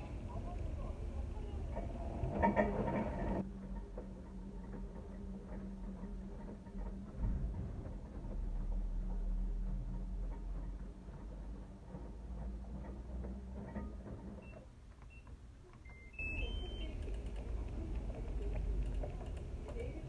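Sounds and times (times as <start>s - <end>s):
washing machine control panel beeps: 14.4s - 17.1s.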